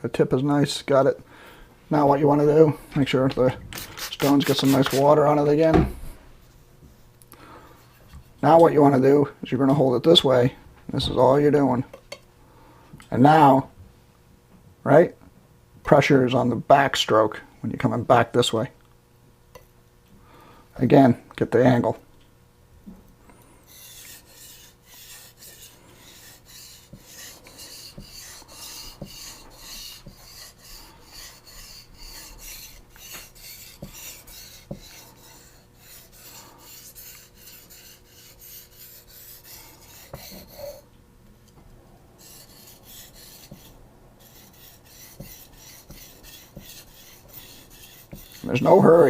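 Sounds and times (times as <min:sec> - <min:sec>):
knife scraping on whetstone: 0:03.8 - 0:05.2, 0:23.7 - 0:40.9, 0:42.2 - 0:49.0.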